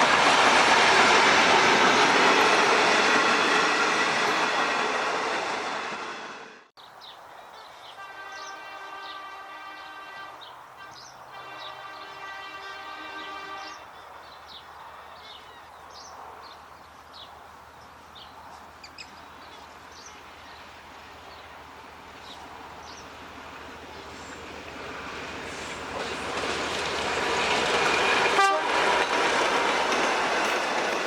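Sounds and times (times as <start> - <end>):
faint train rumble: 7.4 - 31.0
locomotive horn blast: 8.0 - 13.9, 28.0 - 29.0.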